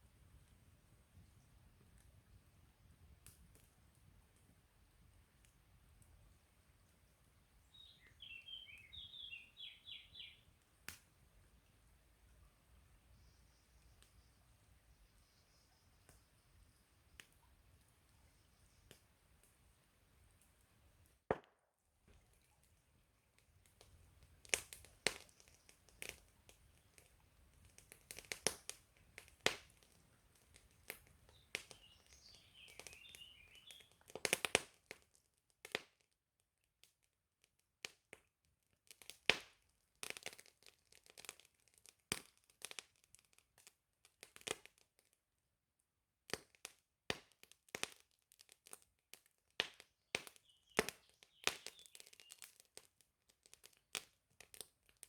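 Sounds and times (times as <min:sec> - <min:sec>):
high bird chirps: 0:07.8 - 0:10.4, 0:31.8 - 0:33.9
wood fire crackling: 0:23.5 - 0:34.7.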